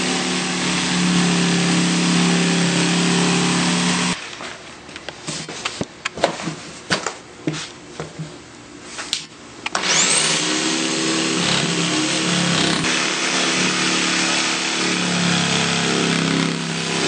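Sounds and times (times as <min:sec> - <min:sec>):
power saw cutting stone: 0:00.0 - 0:04.2, 0:09.8 - 0:17.0.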